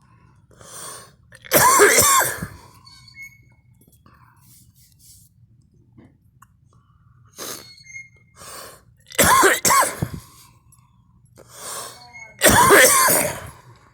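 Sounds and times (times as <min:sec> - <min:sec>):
person coughing: 0:01.5 - 0:02.7, 0:09.1 - 0:10.4, 0:12.4 - 0:13.6
sharp breaths: 0:11.4 - 0:12.3.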